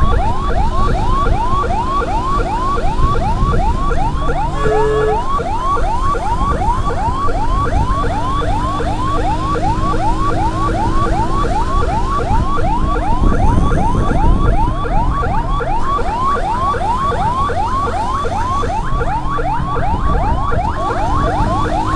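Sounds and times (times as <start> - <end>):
electronic siren yelping: 0.0 - 21.9
vehicle horn honking: 4.5 - 5.4.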